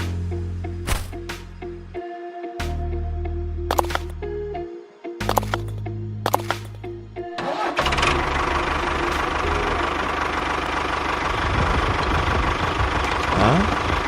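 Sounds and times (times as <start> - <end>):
music: 0.0 - 10.6
tractor engine chugging: 7.4 - 14.0.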